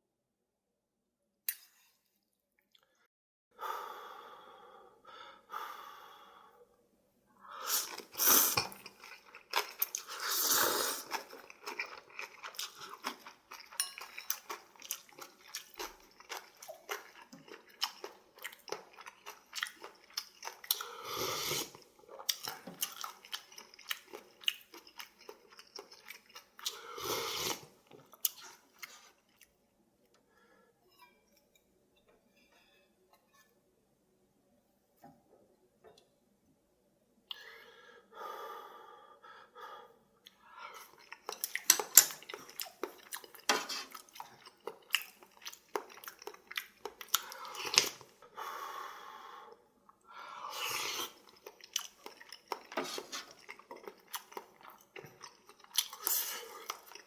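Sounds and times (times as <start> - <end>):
person slurping noodles: 7.6 - 11.8, 20.7 - 21.8, 26.7 - 27.8, 50.4 - 51.3
chewing: 7.8 - 21.0, 21.6 - 29.6, 40.3 - 48.1, 50.5 - 57.0.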